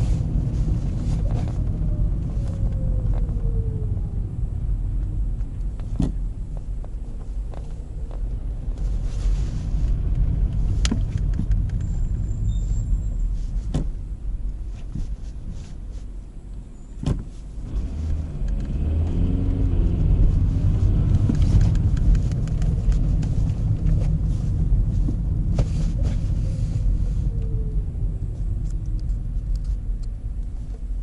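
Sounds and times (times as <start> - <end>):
gear shift click: 5.0 - 9.2, 9.8 - 12.6, 13.5 - 15.9, 16.5 - 27.7
car engine accelerating: 17.5 - 30.6.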